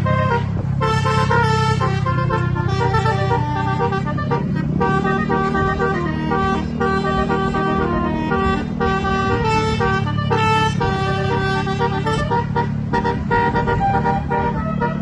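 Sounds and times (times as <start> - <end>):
multi-tone bus horn tune: 0.0 - 15.0.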